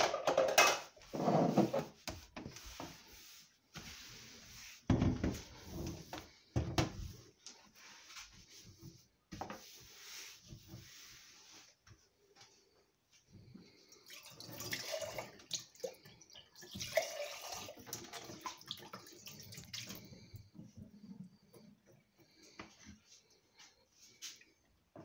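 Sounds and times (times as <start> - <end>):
kitchen items knocking and rubbing: 0.0 - 11.3.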